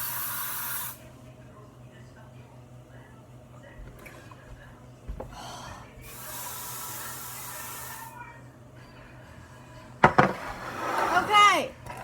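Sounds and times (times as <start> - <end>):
steady hiss: 0.0 - 1.0.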